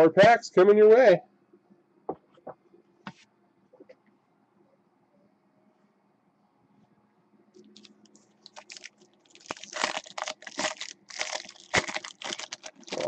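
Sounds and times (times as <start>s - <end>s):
foil wrapper crinkling and tearing: 7.6s - 13.0s.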